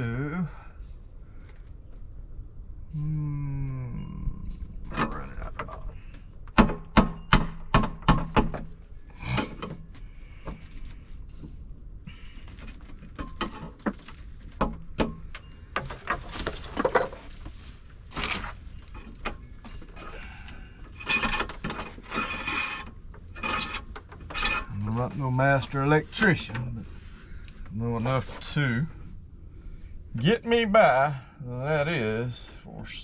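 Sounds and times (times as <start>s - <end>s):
scraping and rustling: 9.2s - 29.2s.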